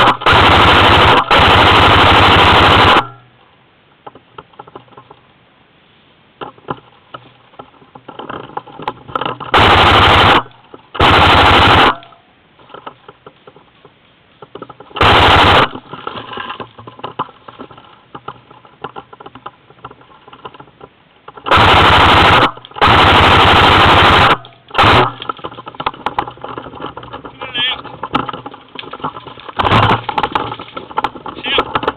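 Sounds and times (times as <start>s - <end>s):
airsoft gun firing bursts: 0.0s - 3.2s, 9.5s - 12.2s, 15.0s - 15.8s, 21.5s - 25.2s.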